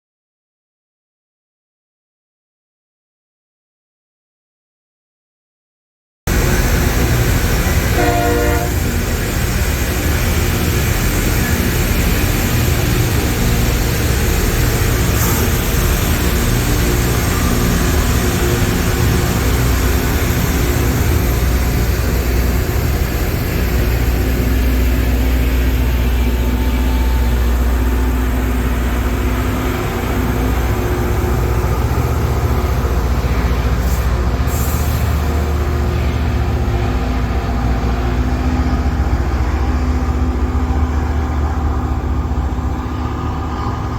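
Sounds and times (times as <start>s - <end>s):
diesel engines droning: 6.3s - 43.9s
rail grinding roar: 6.3s - 43.9s
short horn-like sound: 7.9s - 8.9s.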